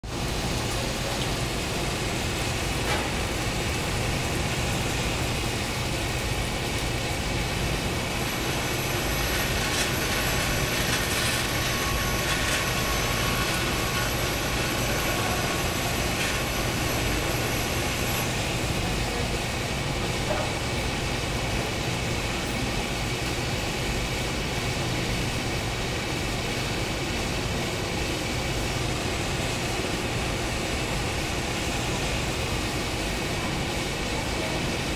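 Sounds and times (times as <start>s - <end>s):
factory machinery din: 2.5s - 20.8s
thin high whine: 8.1s - 19.0s.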